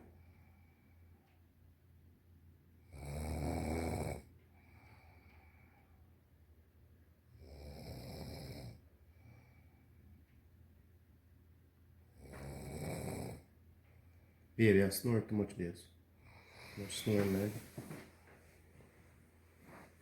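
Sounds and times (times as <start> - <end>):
woman snoring: 2.9 - 4.2, 7.4 - 8.8, 12.2 - 13.5.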